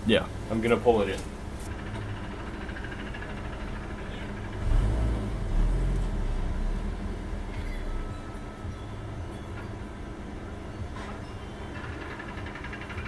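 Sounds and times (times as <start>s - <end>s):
car engine rumbling: 0.0s - 13.0s.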